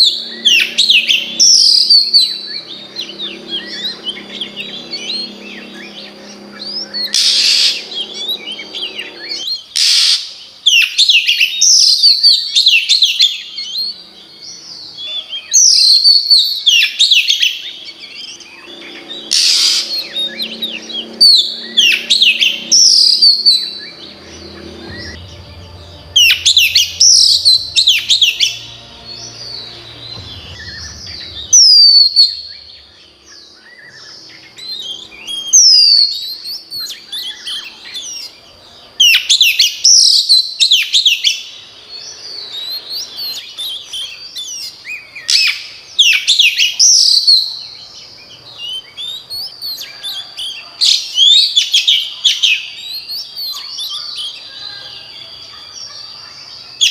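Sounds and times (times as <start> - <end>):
bird singing whistled notes: 0.0 - 38.4, 39.0 - 50.3.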